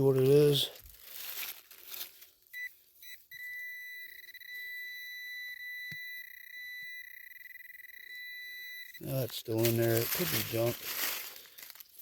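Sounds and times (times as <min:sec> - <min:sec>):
pinpointer steady high tone: 0:02.5 - 0:10.8
pinpointer short beeps: 0:02.6 - 0:09.2.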